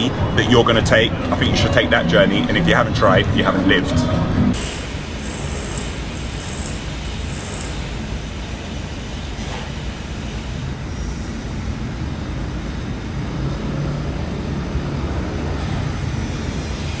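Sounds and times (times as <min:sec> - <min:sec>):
engines rumbling: 0:00.0 - 0:17.0
low hum: 0:04.5 - 0:17.0.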